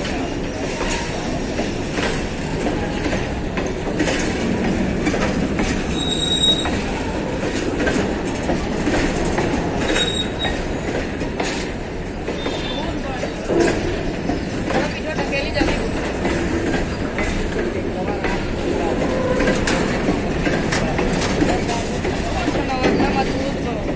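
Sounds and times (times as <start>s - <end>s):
train wheels rumbling on rails: 0.0s - 23.9s
high wheel squeals: 5.9s - 6.8s, 9.9s - 10.6s, 12.3s - 13.0s.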